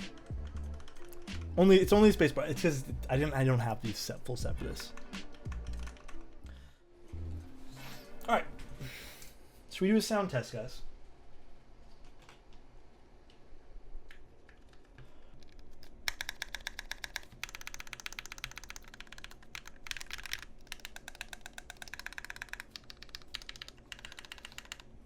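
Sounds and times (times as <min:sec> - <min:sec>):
mechanical keyboard typing: 0:00.0 - 0:01.5, 0:04.8 - 0:06.3, 0:14.5 - 0:24.9.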